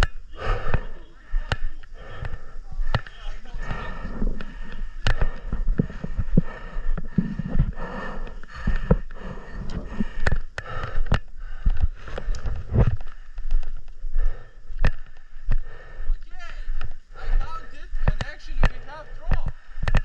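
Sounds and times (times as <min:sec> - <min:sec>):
sharp clicks and knocks: 0:18.0 - 0:20.0.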